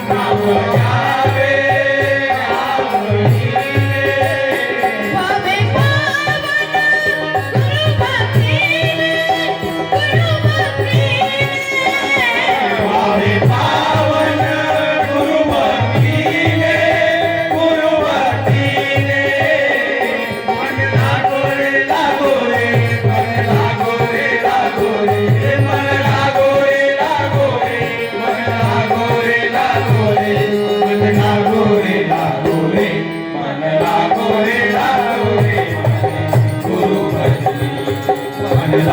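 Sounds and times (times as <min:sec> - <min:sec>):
harmonium melody: 0:00.0 - 0:38.9.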